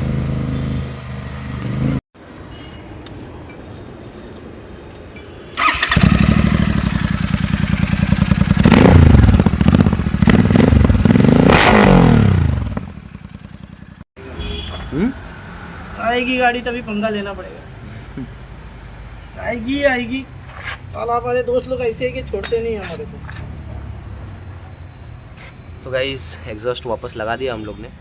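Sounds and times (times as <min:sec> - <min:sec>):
motorcycle engine revving: 0:00.0 - 0:02.0, 0:05.6 - 0:14.0.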